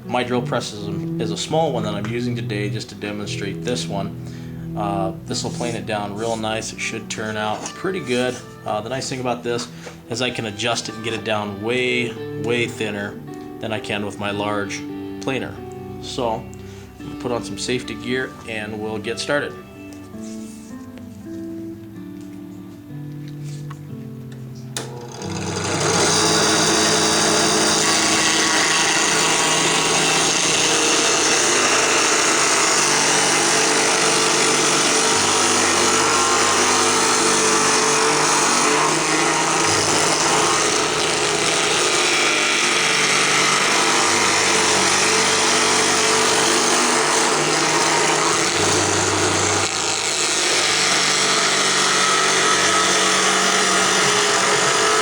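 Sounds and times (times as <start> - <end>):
drill press planer whirring: 24.8 - 55.0.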